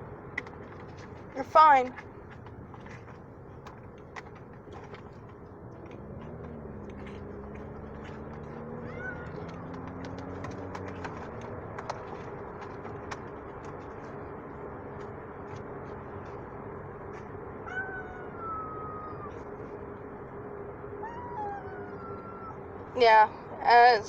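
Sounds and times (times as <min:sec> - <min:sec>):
road hum: 0:00.0 - 0:24.0
cat yowling: 0:08.5 - 0:09.8, 0:17.6 - 0:19.5, 0:21.0 - 0:22.6.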